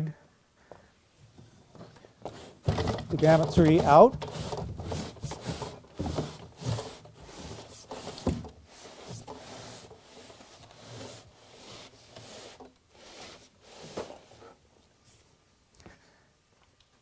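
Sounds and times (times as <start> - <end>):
wood scraping on cardboard: 1.4 - 14.6.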